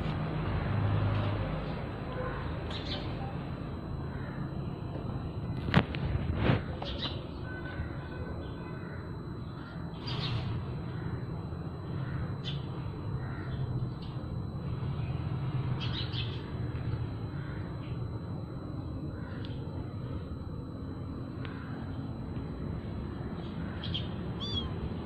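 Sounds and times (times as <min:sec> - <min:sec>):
harsh bird calls: 0:23.6 - 0:24.7.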